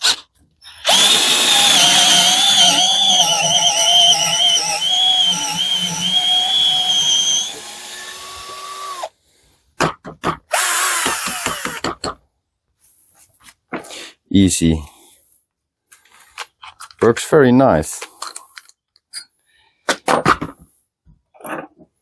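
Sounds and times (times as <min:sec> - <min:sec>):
cordless drill boring: 0:00.0 - 0:09.1, 0:10.5 - 0:11.8.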